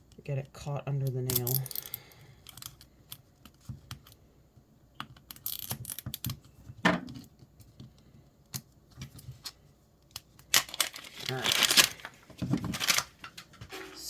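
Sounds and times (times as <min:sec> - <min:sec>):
scrape: 0:13.7 - 0:14.0.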